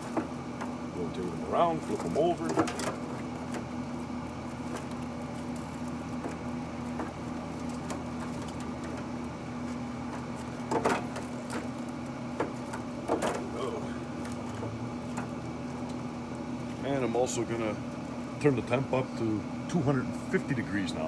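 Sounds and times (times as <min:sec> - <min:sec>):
clatter on grill grate: 0:00.0 - 0:16.1
grill fan humming: 0:00.0 - 0:21.0.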